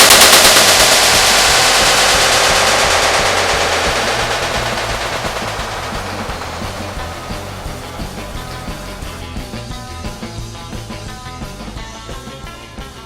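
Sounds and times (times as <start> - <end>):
firecrackers crackling: 0.0 - 9.2.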